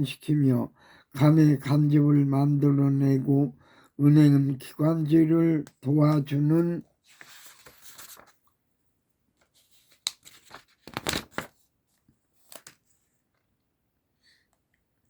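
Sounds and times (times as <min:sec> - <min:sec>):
paper rustling: 0:06.9 - 0:08.5, 0:09.3 - 0:13.5.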